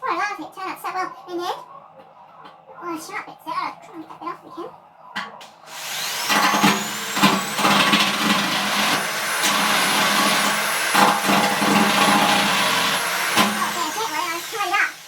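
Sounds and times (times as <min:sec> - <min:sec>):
drill bit scraping steel: 0:05.7 - 0:15.0
electric drill whining: 0:05.7 - 0:15.0.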